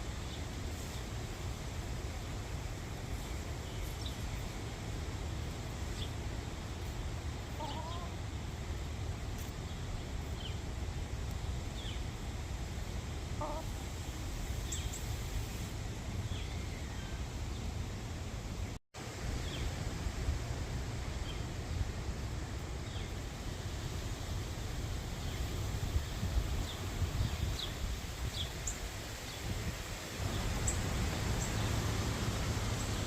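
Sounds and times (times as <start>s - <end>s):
hens calling: 7.5s - 8.2s, 13.3s - 13.8s
wind buffeting microphone: 24.0s - 33.0s.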